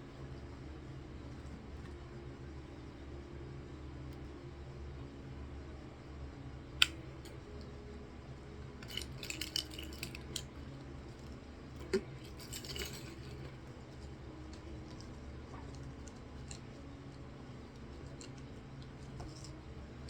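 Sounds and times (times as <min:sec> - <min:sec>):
steady low hum: 0:00.0 - 0:20.0
small hard objects clinking: 0:08.8 - 0:10.5, 0:11.8 - 0:16.8.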